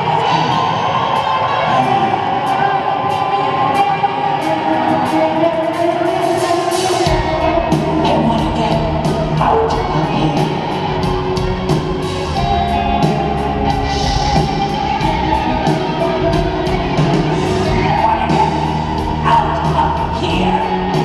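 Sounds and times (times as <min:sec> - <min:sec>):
electric guitars: 0:00.0 - 0:21.0
drum beat: 0:02.4 - 0:21.0.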